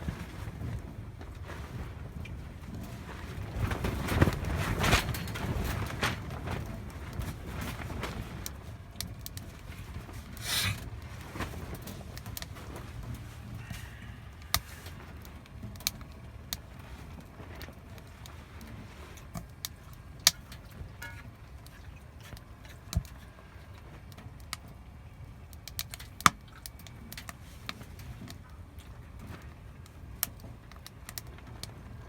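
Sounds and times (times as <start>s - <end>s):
burning wood popping: 0.0s - 24.7s
wood fire crackling: 0.0s - 32.0s.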